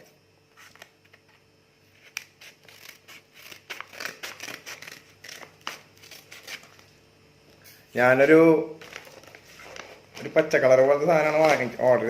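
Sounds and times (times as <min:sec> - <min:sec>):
plastic packaging crinkling and tearing: 0:02.0 - 0:07.0, 0:08.8 - 0:12.0.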